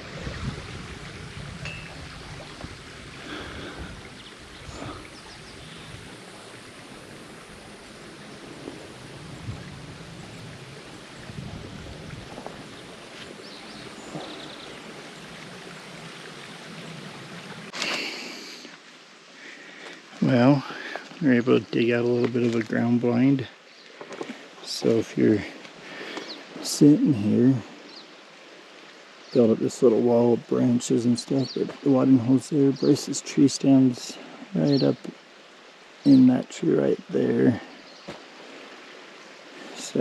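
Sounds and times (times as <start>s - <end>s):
wind gusting over microphone: 0.0s - 17.8s.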